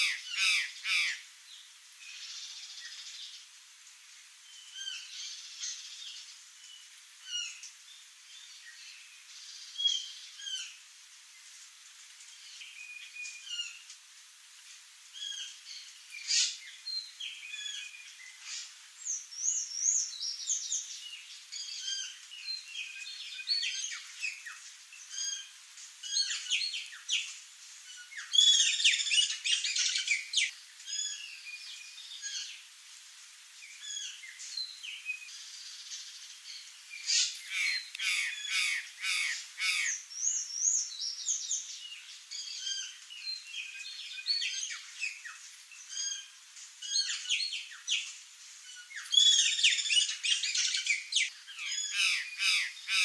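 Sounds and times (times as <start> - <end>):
jays chirping and squawking: 37.1 - 40.0, 51.6 - 53.0.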